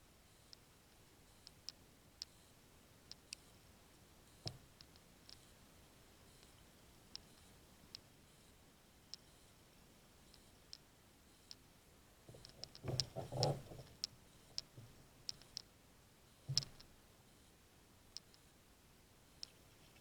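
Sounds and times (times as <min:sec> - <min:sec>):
light clicks: 0:16.5 - 0:16.9.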